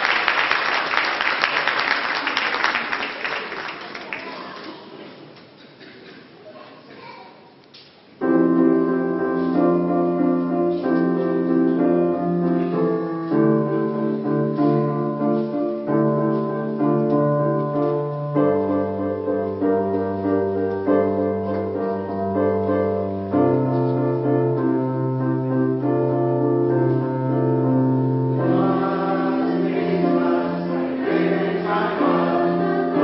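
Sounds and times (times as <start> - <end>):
piano playing slow chords: 8.2 - 33.0.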